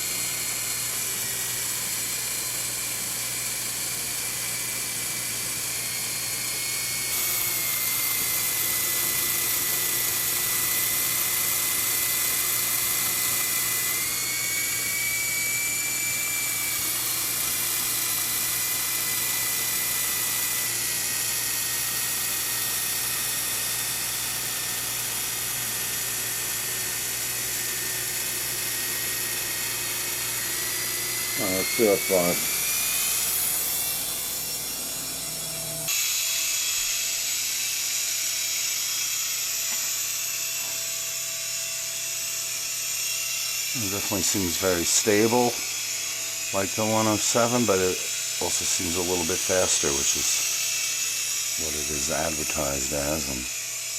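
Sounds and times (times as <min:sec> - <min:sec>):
rc helicopter motors whining: 0:00.0 - 0:53.9.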